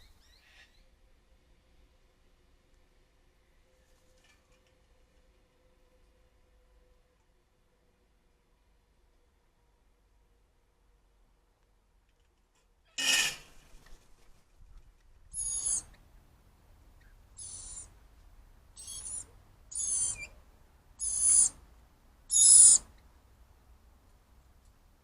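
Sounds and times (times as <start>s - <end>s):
cockatoo screeching: 15.3s - 15.9s, 17.4s - 17.9s, 18.8s - 20.3s, 21.0s - 21.6s, 22.3s - 22.8s.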